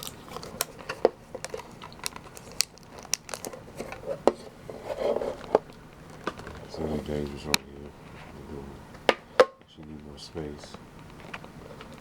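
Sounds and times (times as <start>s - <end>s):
wrapping crinkling: 0.0s - 8.4s.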